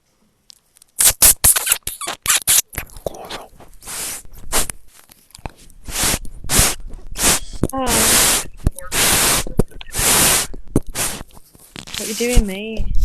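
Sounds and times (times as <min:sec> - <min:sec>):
crackling against a microphone: 0:00.4 - 0:13.0
hissing rushes: 0:05.8 - 0:11.3.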